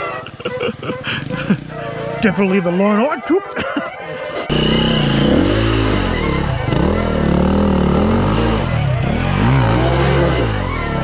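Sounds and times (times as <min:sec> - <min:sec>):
dirt bike engine revving: 0:00.2 - 0:02.2, 0:04.4 - 0:11.0.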